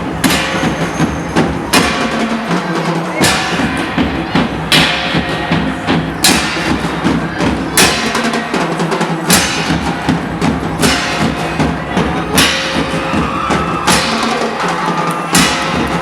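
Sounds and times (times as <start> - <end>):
dance music drum beat: 10.2 - 16.0.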